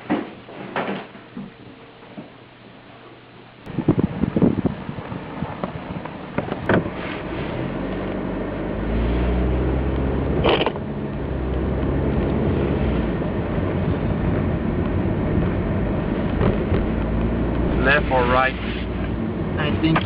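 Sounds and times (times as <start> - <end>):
car engine running: 3.7 - 20.0
knocks and thuds: 16.3 - 17.0.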